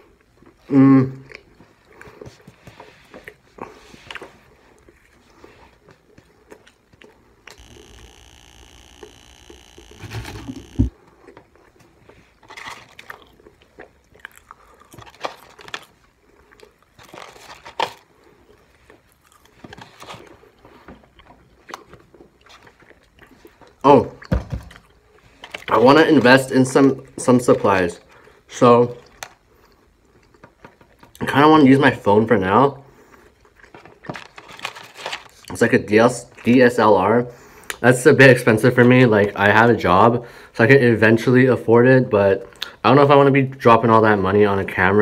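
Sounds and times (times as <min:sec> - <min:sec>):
person chewing and biting food: 0:00.0 - 0:25.8, 0:29.0 - 0:31.2, 0:33.0 - 0:35.4.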